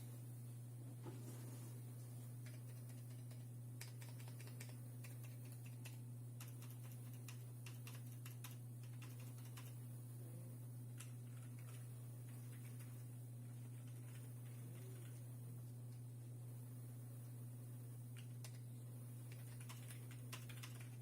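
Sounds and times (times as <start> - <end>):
steady low hum: 0.0 - 21.0
mechanical keyboard typing: 2.4 - 9.8, 11.0 - 13.0, 13.7 - 15.2, 18.2 - 18.6, 19.3 - 21.0.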